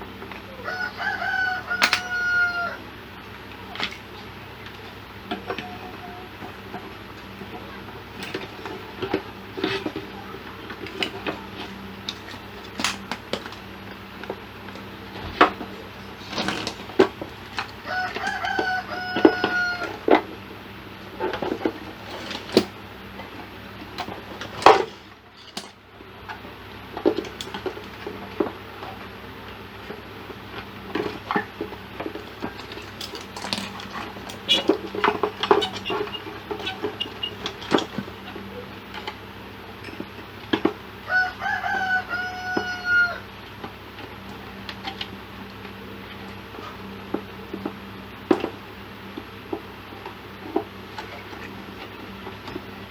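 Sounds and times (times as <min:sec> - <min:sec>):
rooster crowing: 0:00.5 - 0:03.0, 0:17.6 - 0:20.2, 0:41.0 - 0:43.3.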